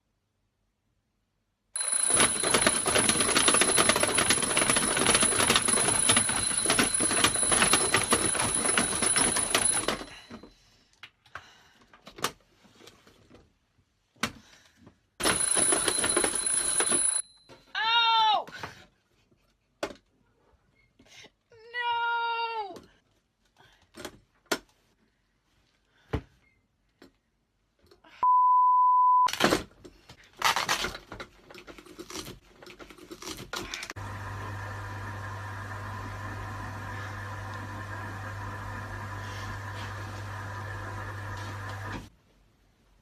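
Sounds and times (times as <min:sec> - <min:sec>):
alarm clock bell ringing: 0:01.8 - 0:10.3, 0:15.2 - 0:17.5.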